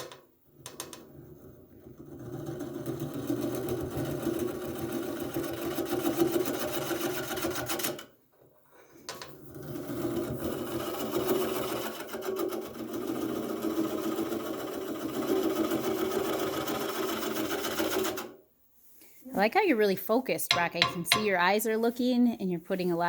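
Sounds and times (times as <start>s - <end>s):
wood lathe humming: 9.8s - 18.4s.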